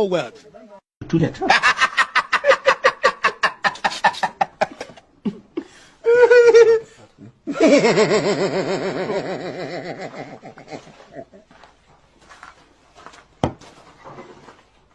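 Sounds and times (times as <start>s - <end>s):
person laughing hard: 1.4s - 11.5s.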